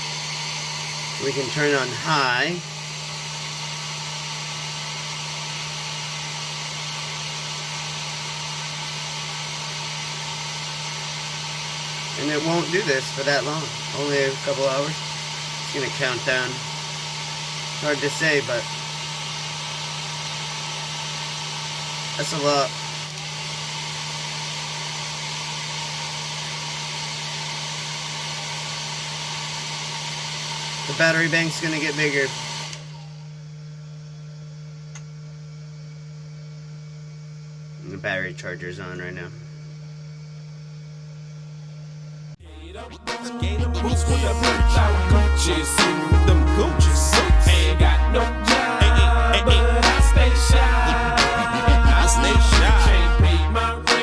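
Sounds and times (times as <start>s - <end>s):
heat gun blowing: 0.0s - 33.3s, 44.3s - 53.2s.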